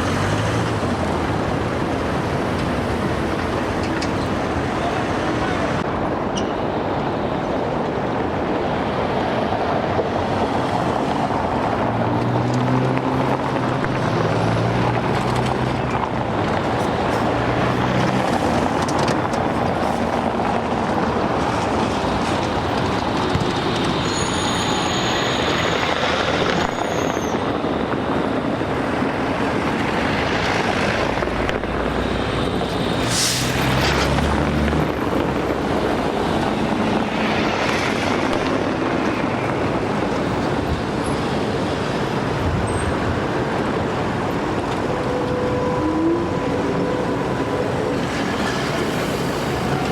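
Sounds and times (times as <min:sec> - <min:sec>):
city street traffic: 0:00.0 - 0:49.9.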